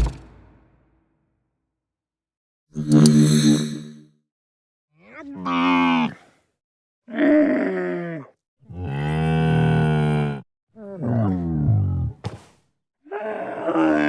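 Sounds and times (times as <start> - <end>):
creature moaning growls: 7.1 - 12.2, 13.1 - 14.0.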